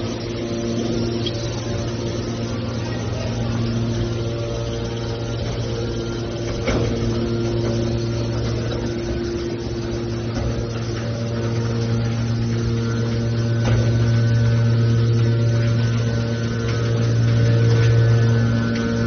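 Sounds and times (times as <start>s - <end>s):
hydraulic power unit humming: 0.0s - 19.0s.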